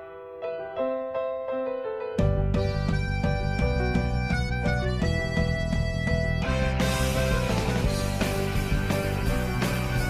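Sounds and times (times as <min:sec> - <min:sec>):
quiet keyboard music: 0:00.0 - 0:10.0
band with bass and beat: 0:02.2 - 0:10.0.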